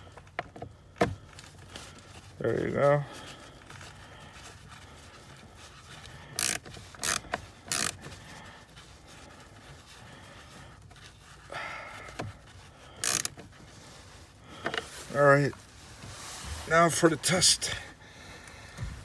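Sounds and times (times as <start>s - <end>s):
plastic trim scraping: 6.0s - 8.2s.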